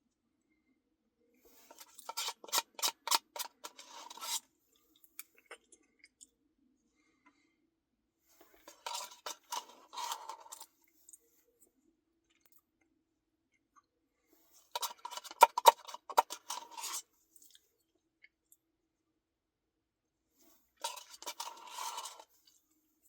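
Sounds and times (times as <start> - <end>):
crackly chewing: 4.8 - 6.4.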